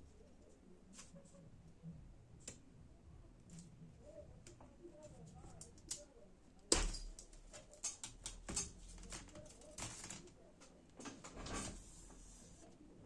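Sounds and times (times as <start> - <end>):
scraping and rustling: 11.0 - 12.7.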